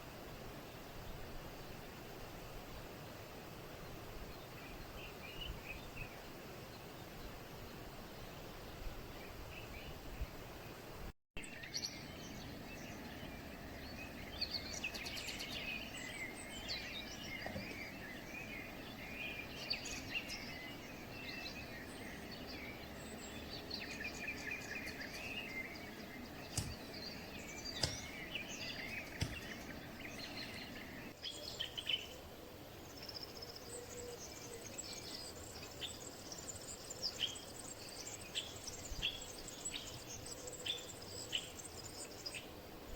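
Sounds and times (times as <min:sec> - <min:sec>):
steady background hiss: 0:00.0 - 0:42.9
birds chirping and calling: 0:11.4 - 0:32.0.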